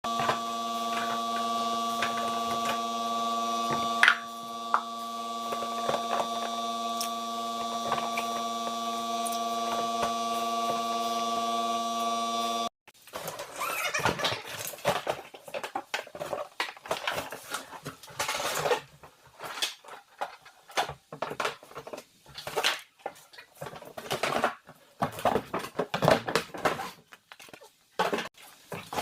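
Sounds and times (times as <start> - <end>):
snow blower parts clattering: 3.6 - 10.2.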